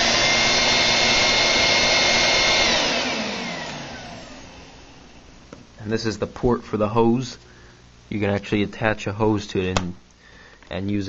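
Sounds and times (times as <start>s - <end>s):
vacuum cleaner motor whining: 0.0s - 5.3s.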